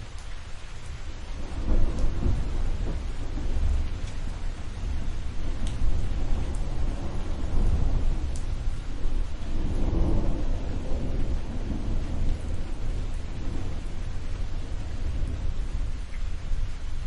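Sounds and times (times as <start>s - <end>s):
steady rain: 0.0s - 17.0s
thunder rumbling: 0.0s - 17.0s.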